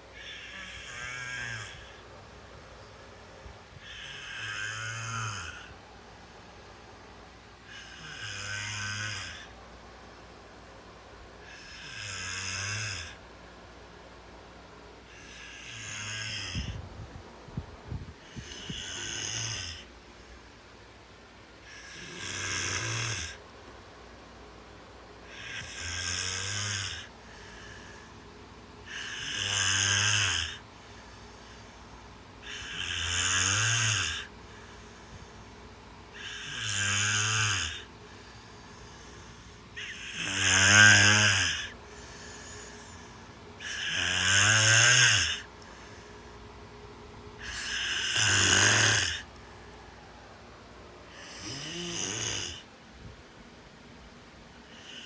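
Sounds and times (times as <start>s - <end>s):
snoring: 0.1s - 2.0s, 3.8s - 5.7s, 7.6s - 9.5s, 11.4s - 13.2s, 15.0s - 16.8s, 18.2s - 19.9s, 21.6s - 23.4s, 25.2s - 28.2s, 28.8s - 46.1s, 47.4s - 49.3s, 51.1s - 52.7s, 54.7s - 55.0s.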